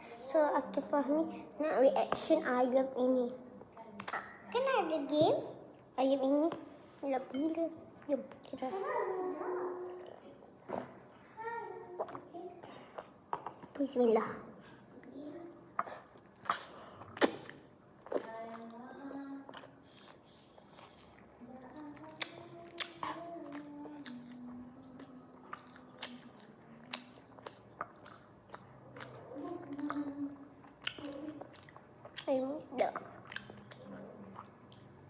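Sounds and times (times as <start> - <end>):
person chewing crunchy food: 15.7 - 18.8, 19.5 - 21.3, 25.0 - 35.0.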